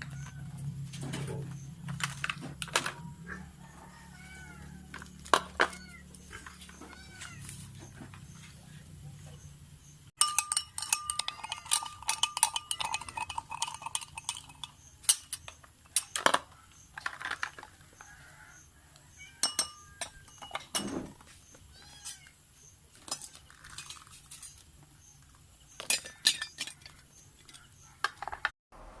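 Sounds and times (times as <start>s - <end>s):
cat meowing faintly: 5.6s - 7.7s
kitchenware clinking: 10.2s - 17.6s, 19.4s - 21.2s, 25.7s - 28.5s.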